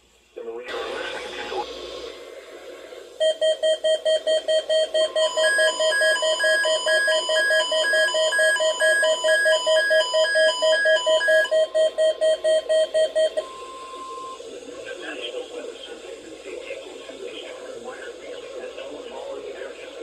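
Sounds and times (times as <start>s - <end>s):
fast electronic beeps: 3.2s - 14.4s
slower higher-pitched beep: 3.2s - 14.4s.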